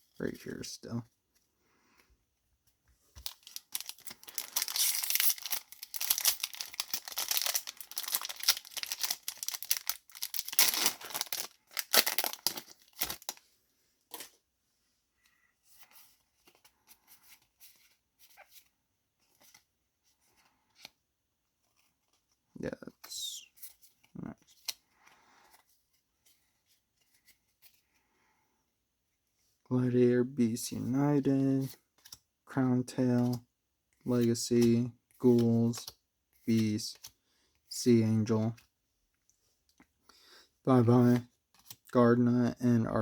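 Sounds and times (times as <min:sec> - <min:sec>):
soft handling sounds: 0:00.0 - 0:28.2
foil wrapper tearing and crinkling: 0:03.2 - 0:13.4.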